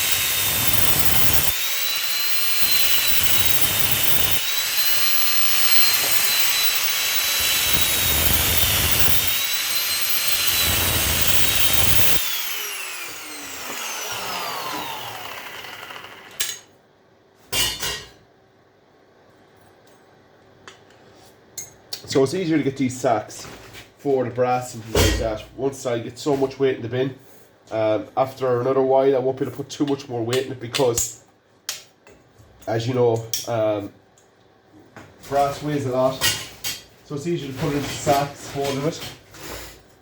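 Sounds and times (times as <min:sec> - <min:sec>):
power tool cutting pipe: 0:00.0 - 0:16.5.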